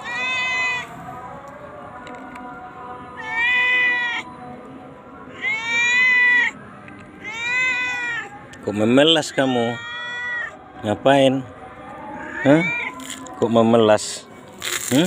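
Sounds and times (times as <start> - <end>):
cat meowing: 0.0 - 0.9, 3.2 - 4.3, 5.3 - 6.6, 7.2 - 8.4, 9.2 - 10.6, 12.2 - 13.0.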